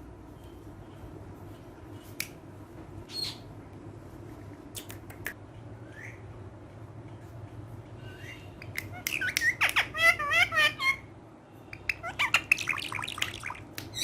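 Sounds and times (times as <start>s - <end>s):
parrot squawking and chirping: 3.1s - 3.5s, 8.1s - 11.1s, 11.7s - 14.0s.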